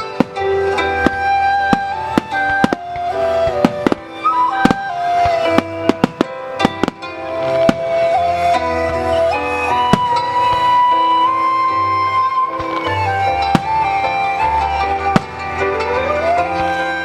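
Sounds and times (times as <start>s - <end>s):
firework bangs and cracks: 0.0s - 11.0s, 12.6s - 14.2s
slow melody of held notes: 0.0s - 17.0s.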